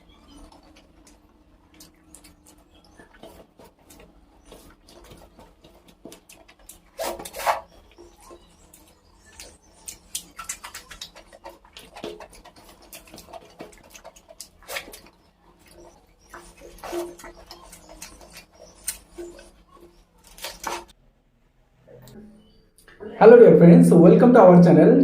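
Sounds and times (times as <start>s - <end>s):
food being chewed: 0.0s - 20.9s.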